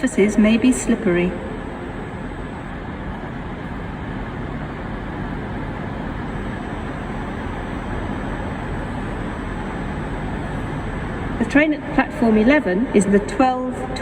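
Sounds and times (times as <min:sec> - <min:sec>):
station rumble and hiss: 0:00.0 - 0:14.0.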